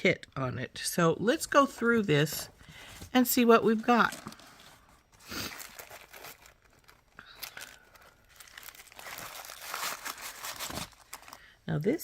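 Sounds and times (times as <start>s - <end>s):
plastic packaging crinkling: 2.8s - 11.6s.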